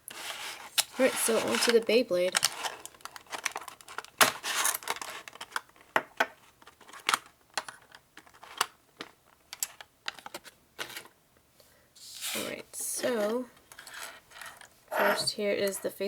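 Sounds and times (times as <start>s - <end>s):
packaging rustling: 0.1s - 11.2s.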